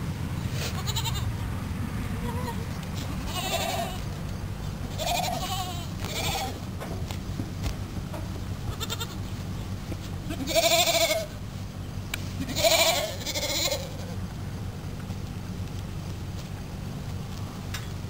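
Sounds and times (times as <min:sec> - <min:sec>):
goats bleating: 0:00.6 - 0:01.3, 0:02.2 - 0:04.1, 0:04.9 - 0:06.6, 0:08.7 - 0:09.3, 0:10.2 - 0:11.4, 0:12.4 - 0:14.2.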